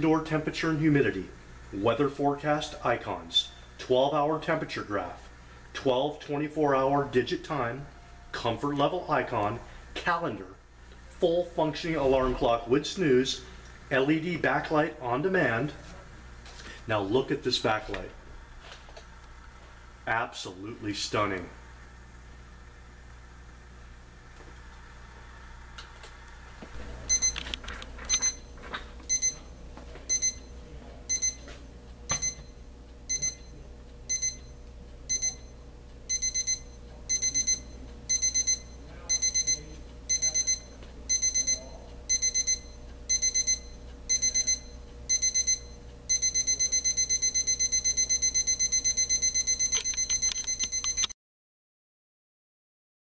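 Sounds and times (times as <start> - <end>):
alarm clock beeping: 27.1 - 27.5, 28.1 - 29.5, 30.1 - 30.5, 31.1 - 31.5, 32.1 - 51.2
clock handling clicks: 49.6 - 51.1.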